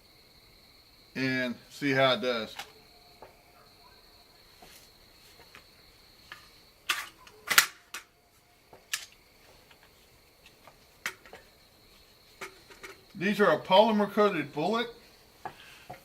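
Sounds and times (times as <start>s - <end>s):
insects droning: 0.0s - 16.0s
cartridges and magazine clicking: 6.9s - 8.1s.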